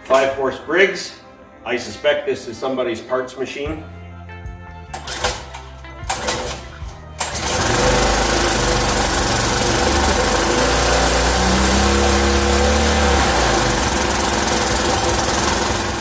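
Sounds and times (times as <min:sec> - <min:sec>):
lawn mower engine running: 0:05.0 - 0:16.0.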